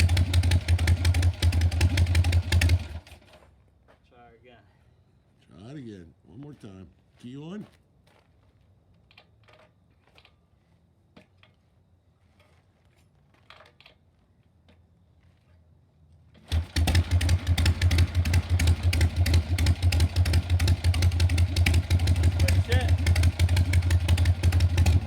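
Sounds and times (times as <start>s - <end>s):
motorcycle engine running: 0.0s - 3.3s, 16.5s - 25.0s.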